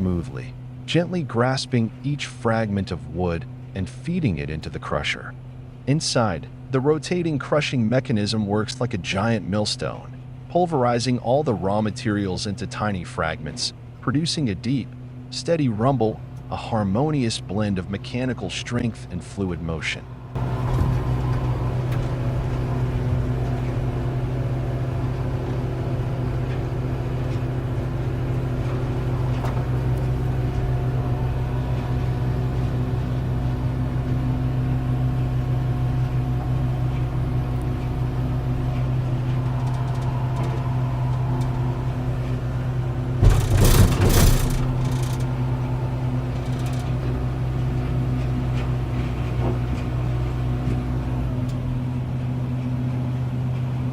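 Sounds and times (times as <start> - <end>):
crusher engine drone: 0.0 - 53.9
cracking and knocking: 43.1 - 45.4.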